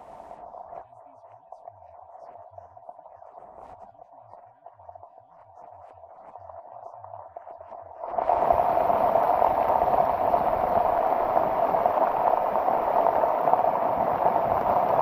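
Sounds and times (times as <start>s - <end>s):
floodwater rushing: 8.2s - 15.0s.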